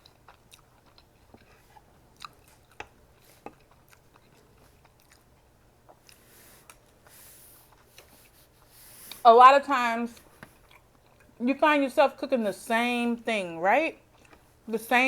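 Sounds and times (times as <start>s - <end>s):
chewing mouth clicks and smacks: 0.0s - 7.0s.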